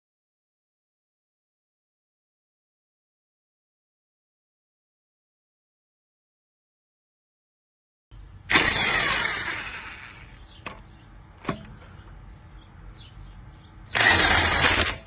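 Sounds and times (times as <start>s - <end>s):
impact wrench hammering rattle: 14.0s - 15.0s.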